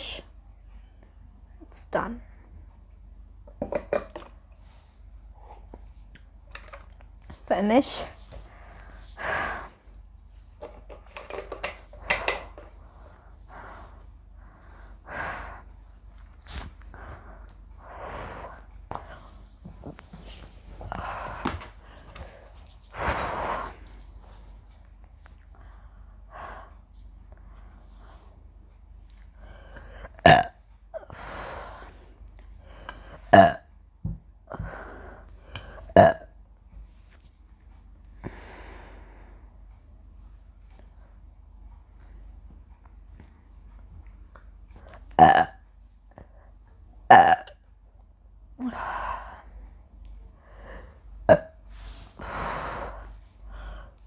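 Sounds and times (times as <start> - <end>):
soft breath: 8.0 - 11.0, 12.0 - 24.7, 38.2 - 39.7, 48.6 - 54.0
woman burping: 30.2 - 30.6, 33.3 - 33.6, 35.9 - 36.3, 45.2 - 45.6, 47.1 - 47.5, 51.3 - 51.6.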